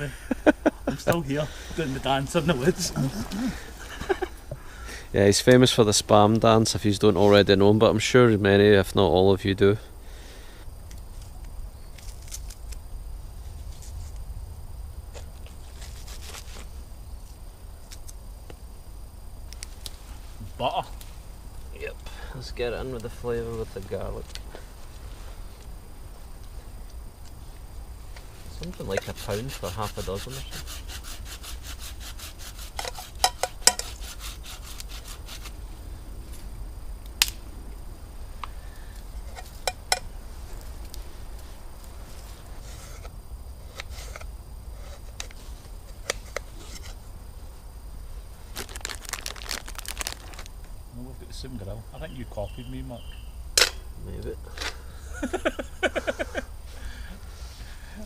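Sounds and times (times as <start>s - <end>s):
campfire crackling and popping: 19.4s - 24.7s, 36.2s - 42.6s, 48.4s - 50.8s
back-and-forth cutting strokes: 28.6s - 35.6s.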